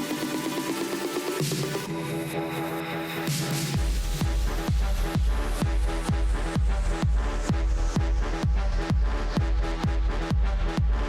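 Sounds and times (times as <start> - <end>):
four-on-the-floor kick drum: 3.3 - 11.0.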